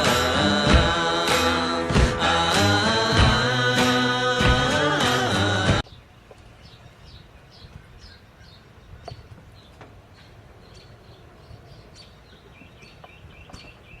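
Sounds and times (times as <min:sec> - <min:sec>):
steady low rumble: 0:00.0 - 0:05.8
small birds chirping: 0:05.8 - 0:14.0.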